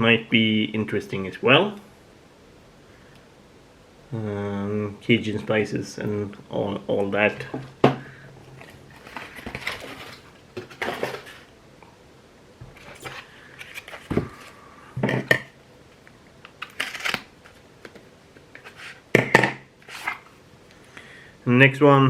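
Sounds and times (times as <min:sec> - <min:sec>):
bottles and packing rustling and knocking: 0:07.4 - 0:11.5.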